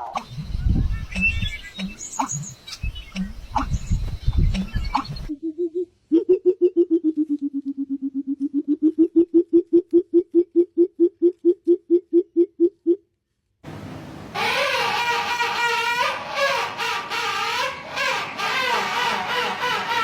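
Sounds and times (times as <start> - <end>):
bird hooting rapidly: 14.4 - 20.0.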